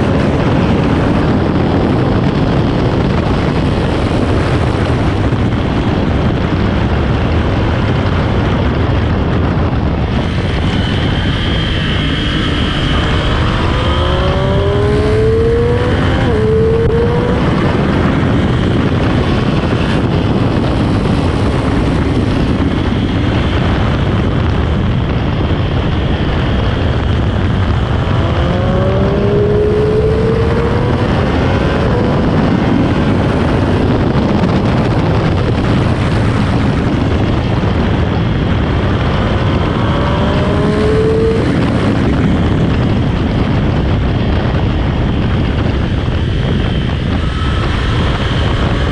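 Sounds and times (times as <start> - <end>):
motorcycle engine accelerating: 0.0 - 48.9
wind rushing: 0.0 - 48.9.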